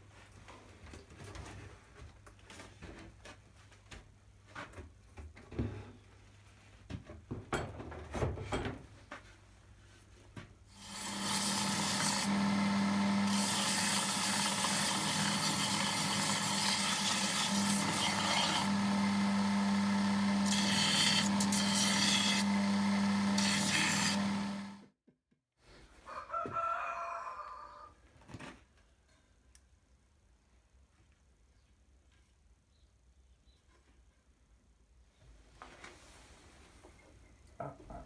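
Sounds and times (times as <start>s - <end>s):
power tool cutting wood: 10.8s - 24.9s.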